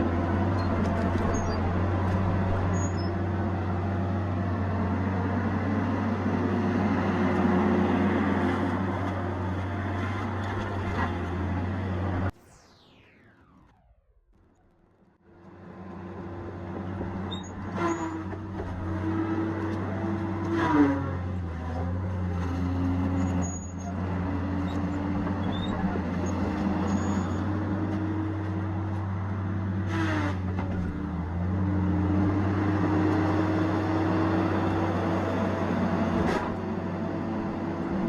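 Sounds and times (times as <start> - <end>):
machine engine running: 6.2 - 17.6.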